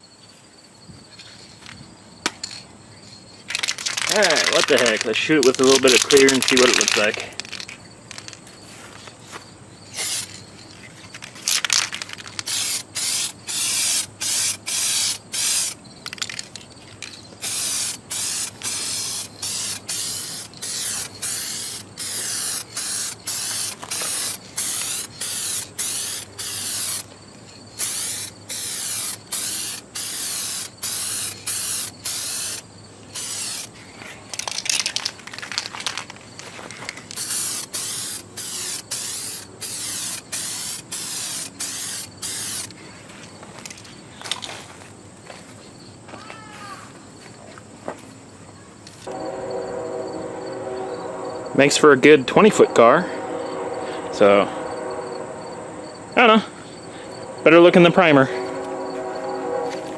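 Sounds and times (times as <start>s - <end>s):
spray gun hissing bursts: 10.0s - 10.4s, 12.5s - 15.8s, 17.4s - 27.1s, 27.8s - 33.8s, 37.2s - 42.7s.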